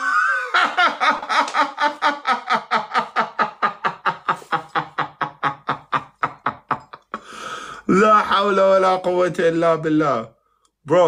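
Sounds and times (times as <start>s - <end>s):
person laughing: 0.0s - 7.3s.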